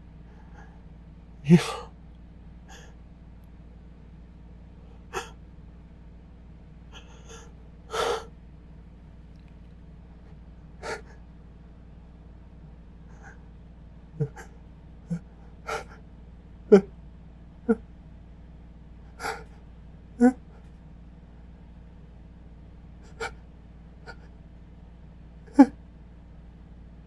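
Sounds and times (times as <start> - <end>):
man gasping and sniffing: 1.5 - 1.9, 2.7 - 2.9, 5.1 - 5.4, 7.0 - 8.3, 10.8 - 11.1, 13.1 - 13.4, 14.2 - 14.5, 15.1 - 16.0, 19.2 - 19.6, 20.2 - 20.6, 23.0 - 23.4, 25.5 - 25.7.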